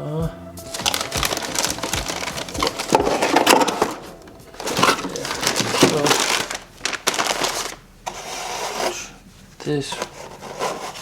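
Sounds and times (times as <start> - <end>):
plastic packaging crinkling: 0.7 - 7.9.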